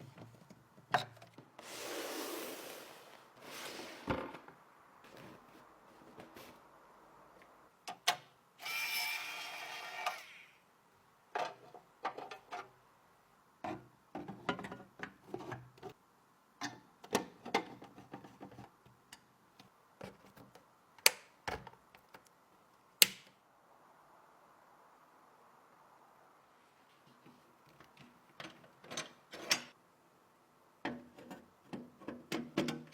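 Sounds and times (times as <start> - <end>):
power tool motor whirr: 8.6 - 10.5
clicks and taps of parts: 16.6 - 22.3, 23.0 - 23.4.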